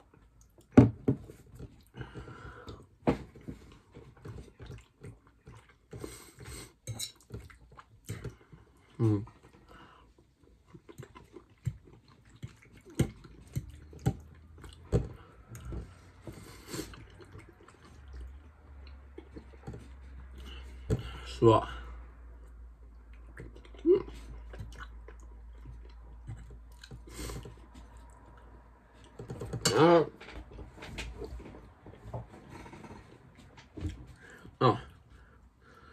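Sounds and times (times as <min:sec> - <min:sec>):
chewing: 0:03.4 - 0:20.8, 0:22.4 - 0:29.6.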